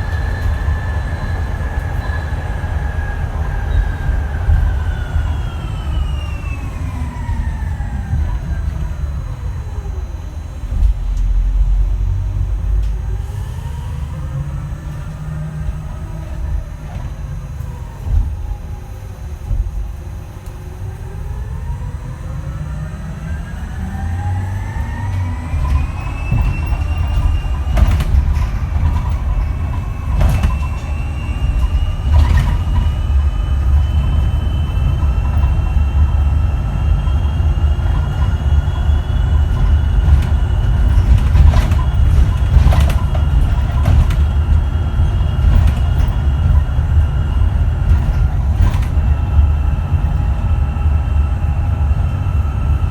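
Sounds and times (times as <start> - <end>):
electric bus motor whine: 0.0 - 52.9
low road rumble: 0.0 - 52.9
knocks and rattles: 25.6 - 36.3, 37.9 - 50.2.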